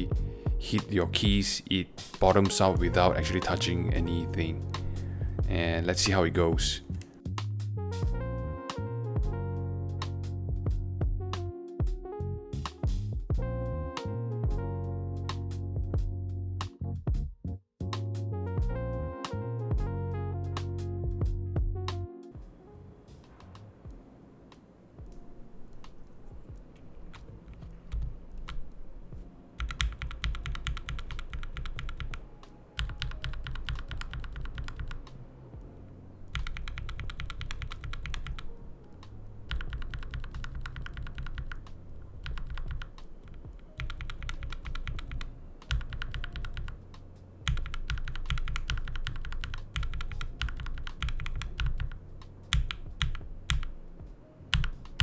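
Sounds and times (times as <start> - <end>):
typing on a mechanical keyboard: 25.0 - 35.2, 36.3 - 46.8, 47.4 - 53.8, 54.5 - 55.0.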